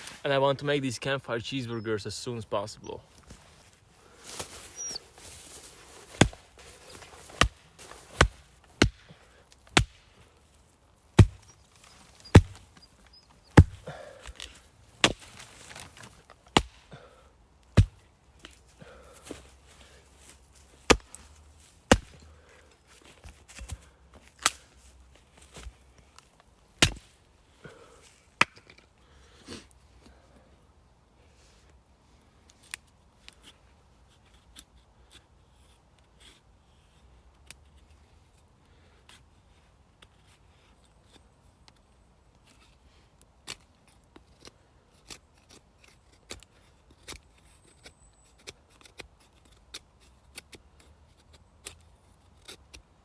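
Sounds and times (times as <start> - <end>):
axe chopping firewood: 6.0 - 10.3, 11.2 - 19.5, 20.8 - 22.5, 23.1 - 24.8, 26.8 - 27.8, 28.4 - 28.8.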